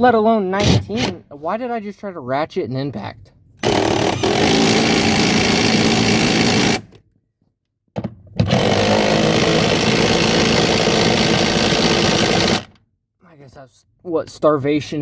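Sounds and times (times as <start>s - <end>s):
impact wrench running: 3.6s - 7.0s, 8.4s - 12.8s.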